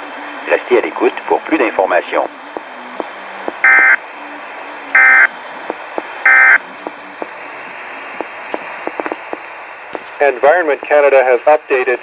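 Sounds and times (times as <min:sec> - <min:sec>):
radio hiss: 0:00.0 - 0:12.0
digital header tone bursts: 0:03.6 - 0:04.0, 0:05.0 - 0:05.3
faint crackles: 0:06.8 - 0:11.9.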